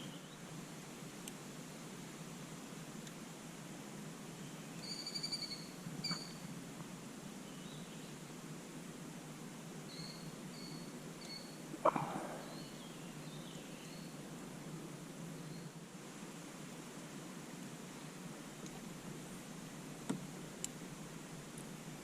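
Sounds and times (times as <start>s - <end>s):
bird pulsed high call: 4.4s - 6.4s, 9.9s - 14.1s
bird chirps: 4.8s - 6.4s, 9.9s - 14.1s.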